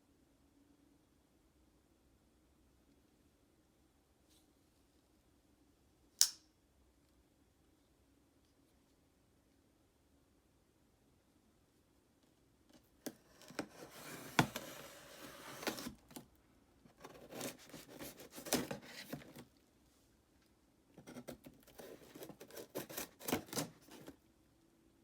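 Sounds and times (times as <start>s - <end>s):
packaging rustling and tearing: 13.3s - 16.2s, 17.0s - 19.5s, 21.6s - 24.2s.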